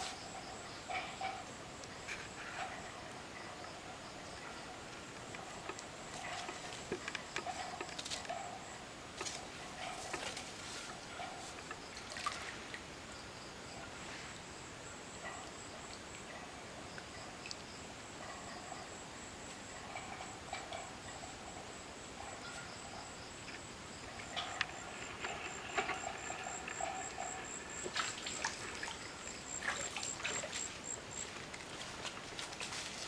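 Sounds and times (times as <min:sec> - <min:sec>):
creek water trickling: 0:00.2 - 0:14.6, 0:22.2 - 0:33.0
sharp clicks and splashes: 0:05.2 - 0:08.6, 0:09.2 - 0:12.8, 0:23.4 - 0:33.0.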